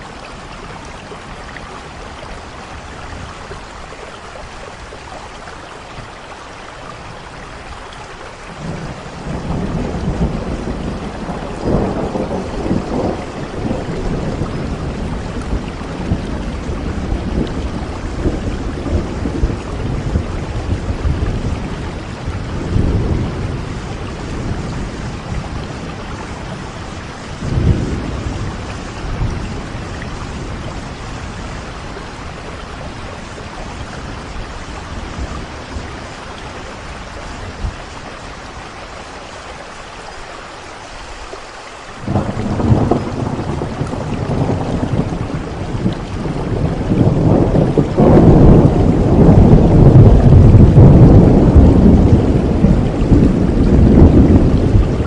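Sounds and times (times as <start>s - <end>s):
steady rain: 0.0s - 55.0s
thunder rumbling: 8.5s - 38.9s, 42.0s - 55.0s.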